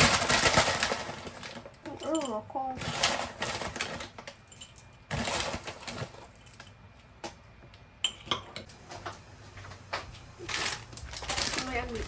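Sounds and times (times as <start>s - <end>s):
kitchen things clattering: 0.0s - 6.8s.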